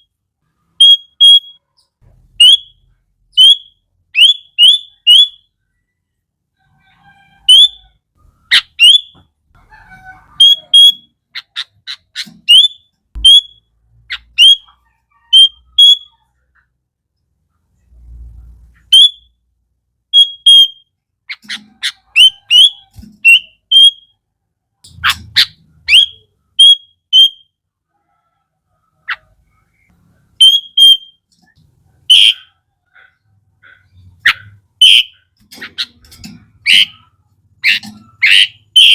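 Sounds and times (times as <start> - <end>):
bird whistled call notes: 3.4 - 5.4, 8.6 - 9.2.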